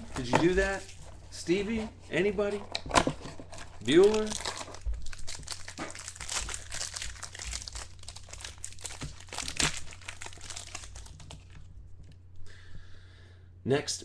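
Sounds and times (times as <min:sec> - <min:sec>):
plastic packaging crinkling: 0:00.0 - 0:01.3, 0:02.5 - 0:11.7
low electrical hum: 0:00.0 - 0:14.0.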